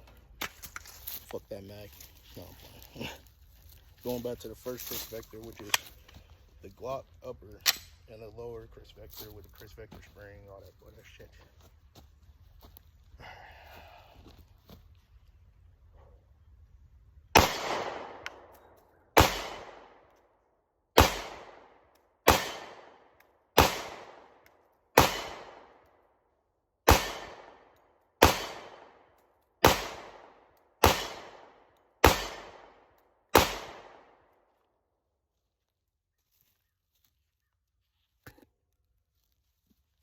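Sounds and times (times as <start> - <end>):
pistol shots with echo: 17.4 - 18.5, 19.1 - 20.1, 20.9 - 24.4, 25.0 - 25.8, 26.8 - 34.2.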